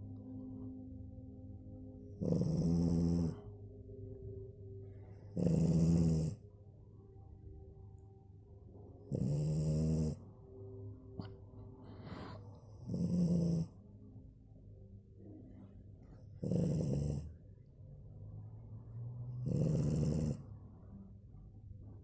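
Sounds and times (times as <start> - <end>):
dog snoring: 2.1 - 3.5, 5.2 - 6.4, 9.1 - 10.2, 11.9 - 13.8, 16.2 - 17.4, 19.2 - 20.6.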